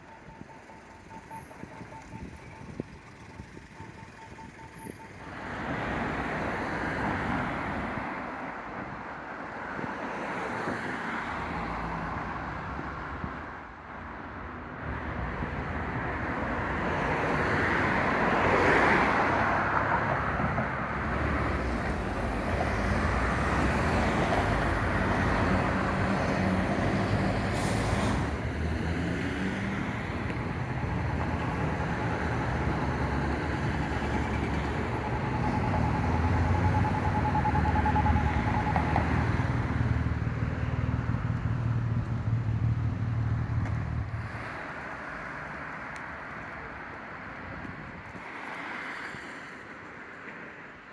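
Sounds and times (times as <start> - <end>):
motor vehicles passing: 17.8 - 46.9
heavy vehicle engine hum: 19.3 - 45.5.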